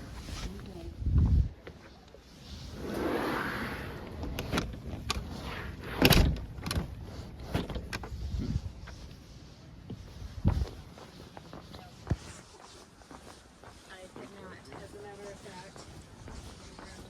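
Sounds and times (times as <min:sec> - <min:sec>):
door swinging air rush: 0:02.5 - 0:09.4.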